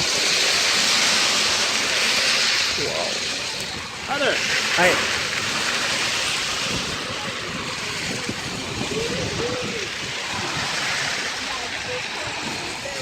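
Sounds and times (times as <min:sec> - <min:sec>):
rushing water: 0:00.0 - 0:13.0
faint voices: 0:02.9 - 0:13.0.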